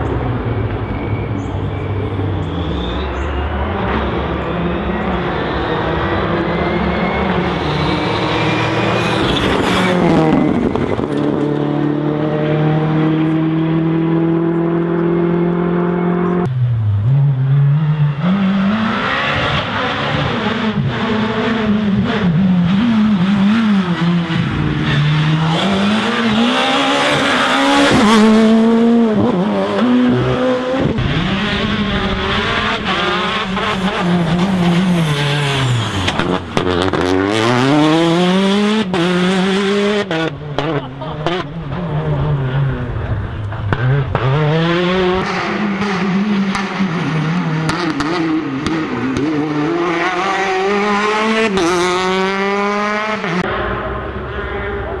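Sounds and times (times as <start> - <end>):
rally car engine passing: 0.0 - 55.0
engine revving through gears: 17.2 - 42.9, 43.6 - 53.5.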